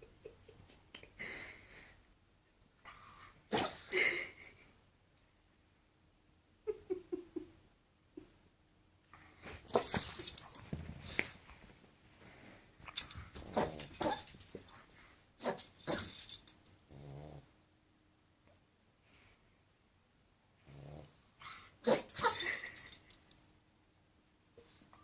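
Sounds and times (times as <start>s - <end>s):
puppy sneezing and snorting: 3.5s - 4.0s.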